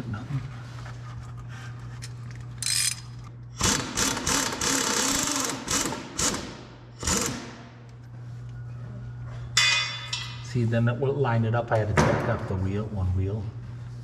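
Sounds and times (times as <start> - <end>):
steady low hum: 0.0 - 14.0
power wrench loosening bolts: 2.6 - 7.5.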